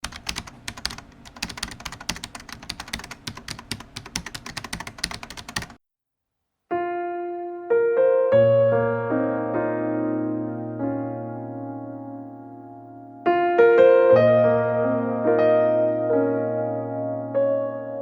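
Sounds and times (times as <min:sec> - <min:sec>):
rapid typing clicks: 0:00.0 - 0:05.8
piano music: 0:06.7 - 0:18.0.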